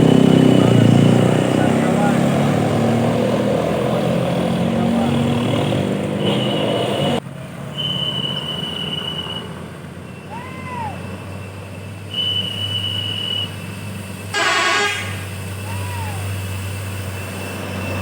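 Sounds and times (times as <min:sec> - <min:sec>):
high whistle-like bus horn: 0:00.0 - 0:01.2, 0:06.2 - 0:18.0
loud blaring horn blast: 0:00.0 - 0:07.2, 0:14.3 - 0:15.6
low engine hum: 0:00.0 - 0:07.7.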